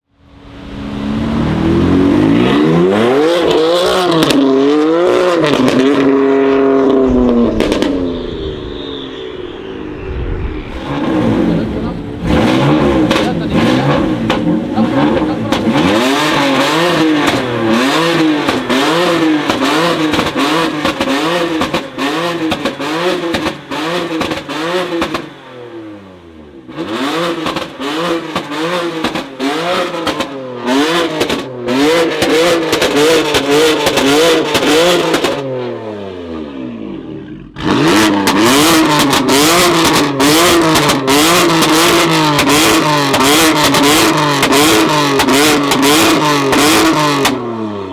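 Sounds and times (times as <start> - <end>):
sports car engine revving: 0.2 - 47.9
exhaust cracks: 1.2 - 25.9, 36.9 - 47.6.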